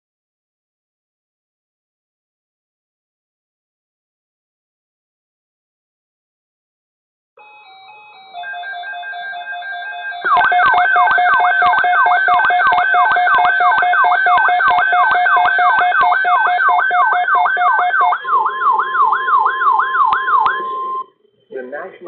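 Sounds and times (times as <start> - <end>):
siren-like wailing sweeps: 8.4 - 21.3
evenly spaced clicks: 10.2 - 20.7.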